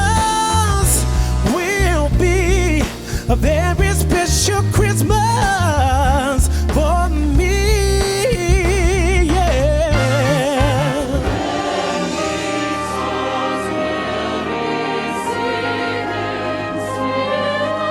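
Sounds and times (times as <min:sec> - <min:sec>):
deep sustained bass notes: 0:00.0 - 0:11.4
person singing with vibrato: 0:00.0 - 0:17.9
choir singing sustained chords: 0:10.8 - 0:17.9.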